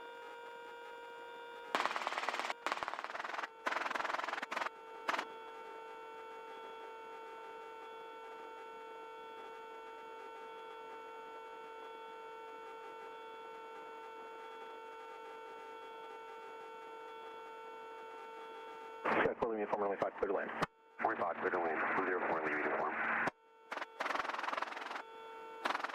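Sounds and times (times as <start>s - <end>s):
helicopter cockpit hum: 1.8s - 5.3s, 19.1s - 25.0s, 25.6s - 25.9s.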